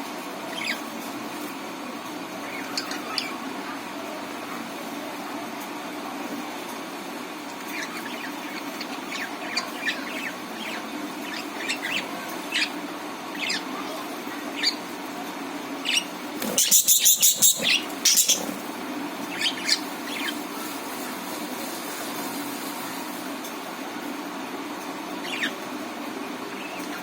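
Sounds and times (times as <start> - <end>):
steady low hum: 0.0 - 27.0
budgerigars chirping: 7.7 - 13.7, 14.5 - 14.8, 15.8 - 18.6, 19.3 - 20.4
shrill bird chatter: 7.7 - 13.8, 14.4 - 14.9, 15.8 - 18.6, 19.3 - 20.4, 25.2 - 25.6.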